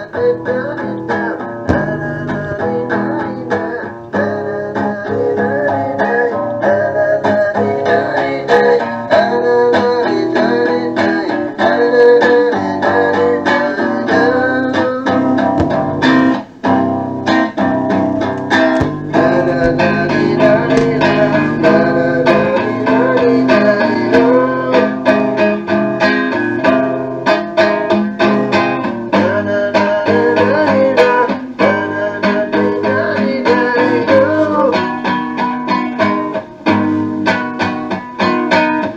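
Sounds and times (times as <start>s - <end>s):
guitar song from cassette tape: 0.0s - 6.6s, 14.7s - 26.2s.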